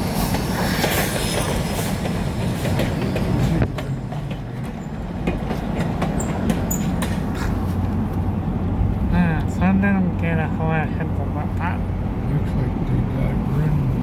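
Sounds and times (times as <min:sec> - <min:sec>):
train wheels clicking over rail joints: 0:00.0 - 0:08.0.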